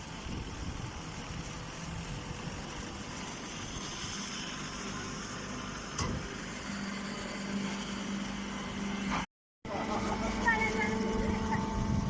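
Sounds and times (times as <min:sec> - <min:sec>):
steady low hum: 0:09.7 - 0:12.0.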